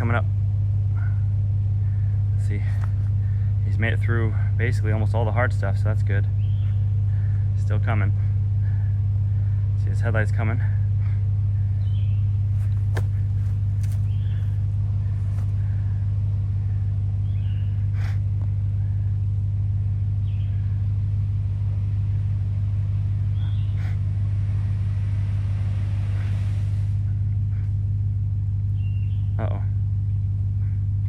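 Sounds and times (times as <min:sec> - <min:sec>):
truck engine idling: 0:00.7 - 0:17.9.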